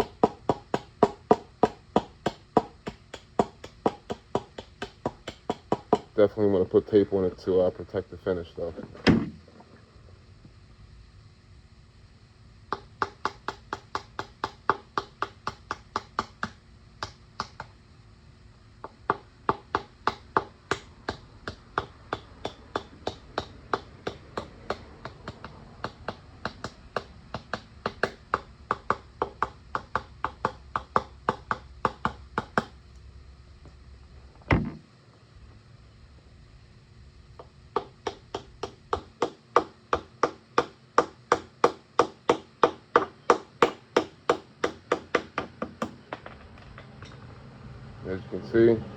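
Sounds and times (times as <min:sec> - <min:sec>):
dull knock: 0:34.5 - 0:34.8.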